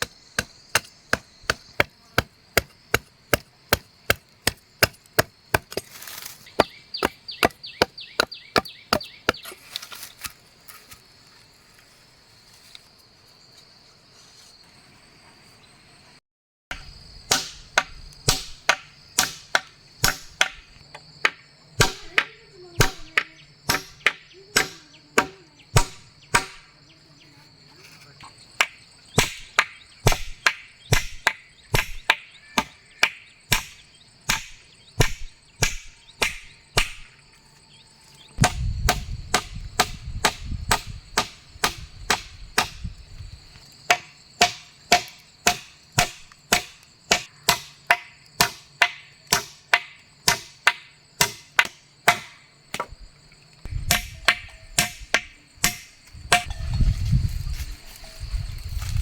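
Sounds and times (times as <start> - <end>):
blade chopping wood: 0.0 - 11.1, 17.3 - 26.7, 28.6 - 37.2, 38.4 - 42.9, 43.9 - 53.0, 53.9 - 56.6
crickets droning: 0.0 - 59.0.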